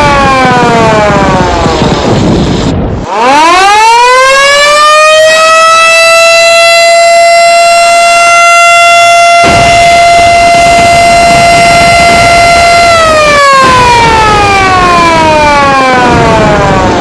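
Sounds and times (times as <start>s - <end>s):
rushing noise: 0.0s - 3.7s, 9.4s - 17.0s
siren wailing: 0.0s - 17.0s.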